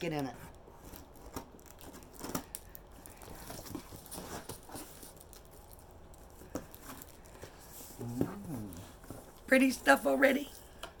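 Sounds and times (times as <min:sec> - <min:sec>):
packing paper rustling: 0:00.7 - 0:09.3.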